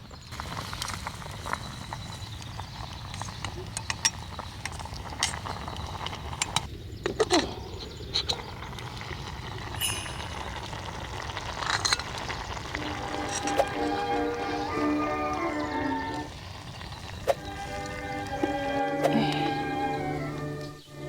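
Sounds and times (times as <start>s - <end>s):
fire crackling: 0.0s - 21.0s
utensils clinking on a pot: 2.5s - 8.6s, 9.6s - 16.5s.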